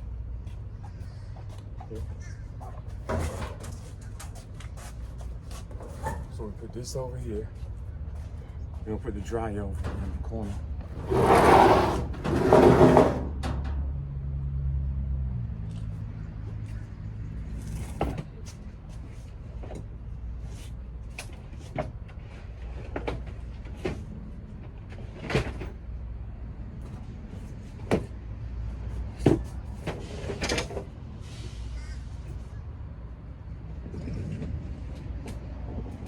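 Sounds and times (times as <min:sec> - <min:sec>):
rattling clatter: 0:09.8 - 0:13.8
heavy items knocking and banging: 0:09.8 - 0:13.9.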